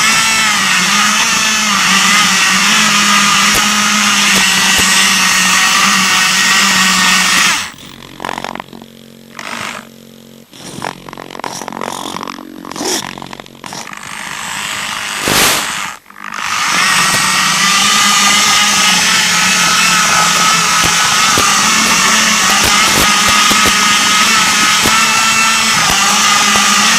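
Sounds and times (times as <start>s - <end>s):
electric motors whining: 0.0s - 26.9s
sharp crack: 15.2s - 16.0s.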